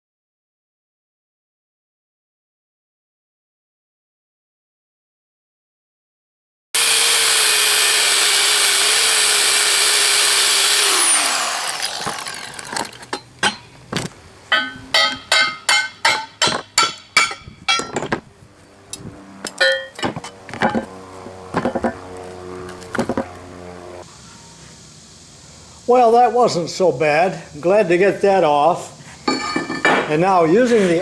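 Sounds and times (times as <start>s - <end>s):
angle grinder grinding metal: 6.8s - 13.6s, 19.0s - 24.0s
ringing metal strikes: 14.5s - 18.1s, 19.6s - 20.9s.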